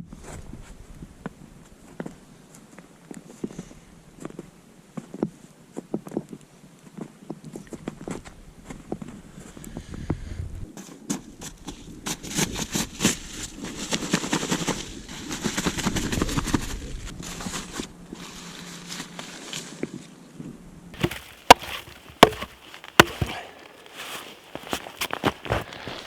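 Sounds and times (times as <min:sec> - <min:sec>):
crunching and rustling: 0:21.0 - 0:26.0.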